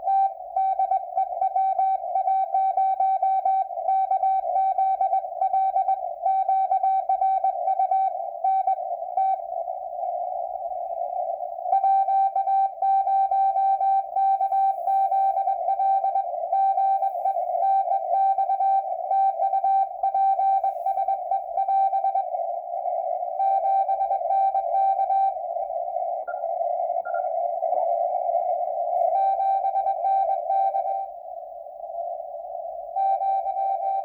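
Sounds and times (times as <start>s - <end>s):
receiver hiss: 0.0s - 34.0s
morse code tone: 11.7s - 25.5s, 26.1s - 27.4s, 28.9s - 31.2s, 32.9s - 34.0s.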